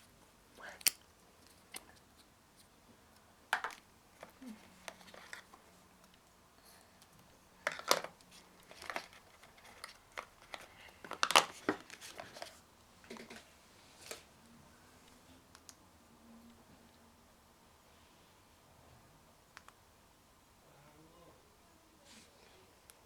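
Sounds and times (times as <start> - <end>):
packaging rustling and crinkling: 7.6 - 14.3.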